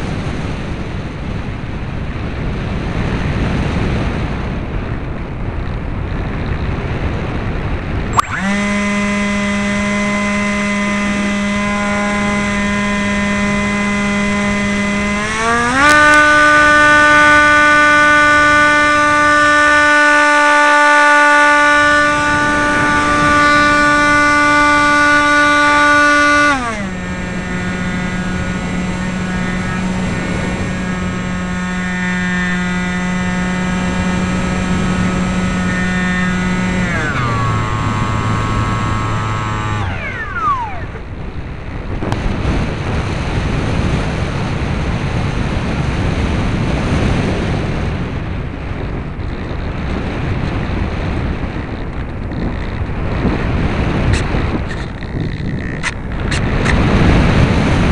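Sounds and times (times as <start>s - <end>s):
electric motor and propeller whining: 0.0s - 57.9s
wind rushing over microphone: 0.0s - 57.9s.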